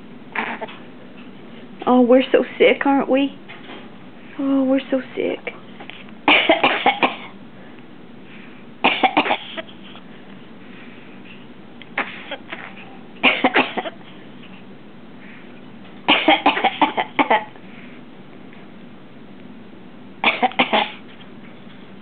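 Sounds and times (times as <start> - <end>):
parrot imitating coughing: 0.3 - 0.8, 6.3 - 7.4, 16.1 - 17.6, 20.2 - 21.0.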